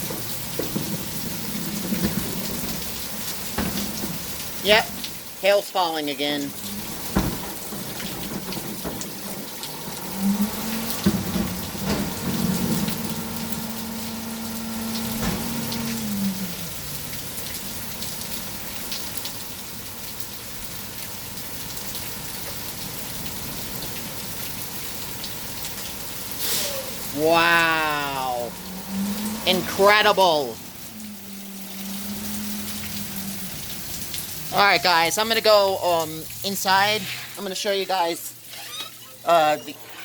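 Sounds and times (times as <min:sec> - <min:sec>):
hailstones striking: 0:00.0 - 0:05.4, 0:06.4 - 0:16.3
heavy rain: 0:00.0 - 0:40.0.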